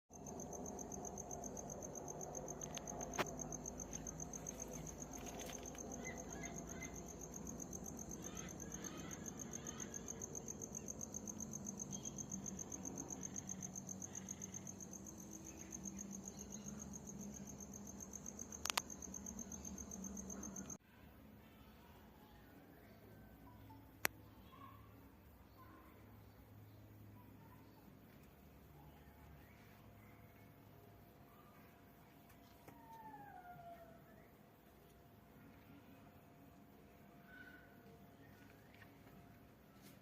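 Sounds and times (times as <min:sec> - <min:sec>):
crickets trilling: 0:00.1 - 0:20.8
faint bird chirps: 0:01.5 - 0:17.6, 0:18.6 - 0:40.0.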